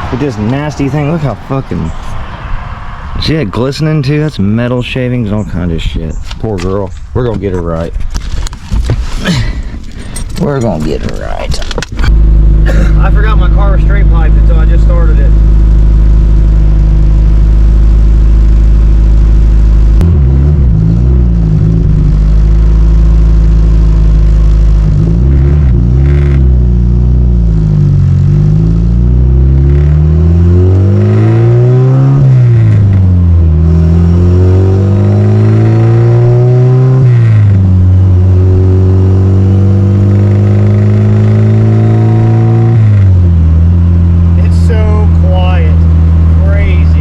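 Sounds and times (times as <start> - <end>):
loud car engine revving: 12.0 - 47.0.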